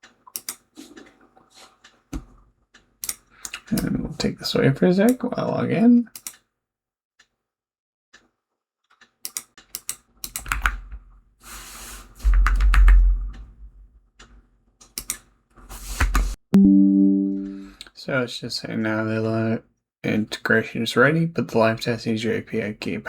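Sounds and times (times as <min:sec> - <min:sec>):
keyboard typing and clicking: 0:12.3 - 0:13.4
pitched musical note: 0:16.6 - 0:17.7.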